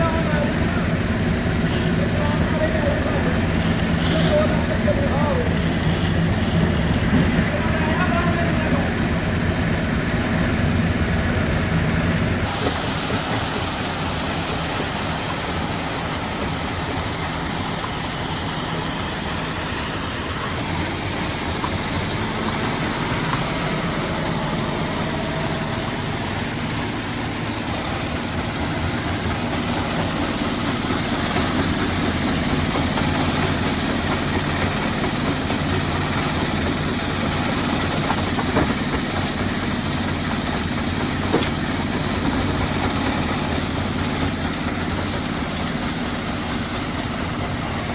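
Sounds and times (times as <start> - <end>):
machinery engine hum: 0.0 - 47.9
machinery clattering: 12.4 - 47.9.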